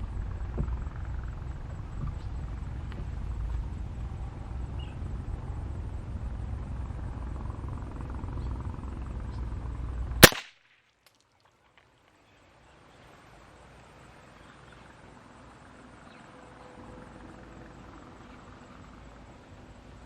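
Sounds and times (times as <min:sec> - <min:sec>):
low rumbling noise: 0:00.0 - 0:10.4
rifle shot: 0:10.2 - 0:10.8.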